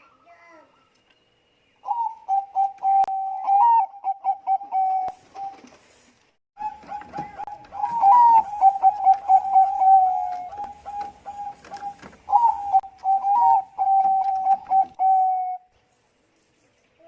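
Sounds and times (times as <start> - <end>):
dove cooing: 1.8 - 5.7, 6.6 - 15.7.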